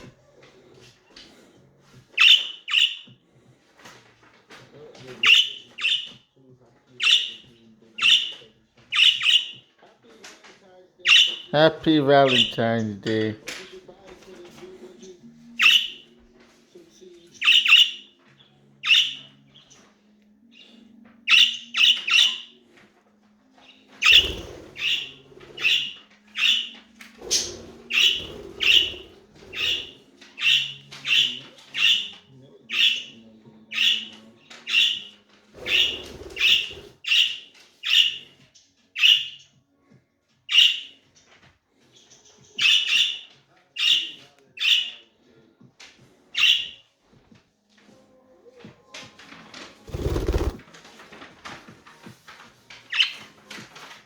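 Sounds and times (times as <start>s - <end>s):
budgies squawking: 2.1s - 3.2s, 5.2s - 6.2s, 7.0s - 9.6s, 11.1s - 11.5s, 12.2s - 12.7s, 15.6s - 16.1s, 17.4s - 18.1s, 18.8s - 19.8s, 20.5s - 22.6s, 24.0s - 38.2s.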